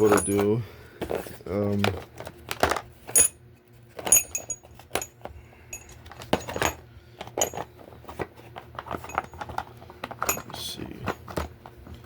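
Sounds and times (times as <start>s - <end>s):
steel sockets clinking in case: 0.0s - 0.5s, 3.1s - 3.4s, 4.0s - 6.8s, 7.4s - 7.6s, 10.2s - 10.6s.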